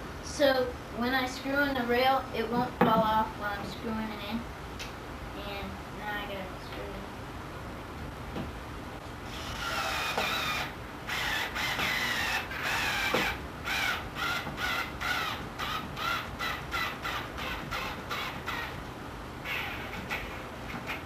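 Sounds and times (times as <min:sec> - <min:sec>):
wood screw squeaking: 0:09.3 - 0:18.8.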